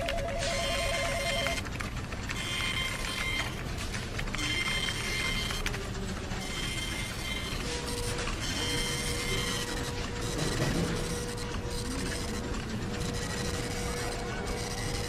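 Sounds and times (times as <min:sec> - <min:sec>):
telephone ringing: 0:00.0 - 0:01.8, 0:06.4 - 0:10.7
office clatter: 0:00.0 - 0:15.0
printer running: 0:00.0 - 0:15.0.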